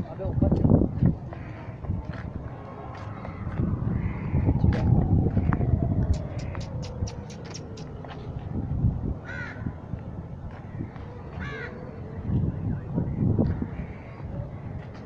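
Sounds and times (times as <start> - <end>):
steady low rumble: 0.2 - 11.1
sharp clicks: 6.1 - 7.9
crow cawing: 6.2 - 7.8, 9.2 - 9.7, 11.4 - 11.8.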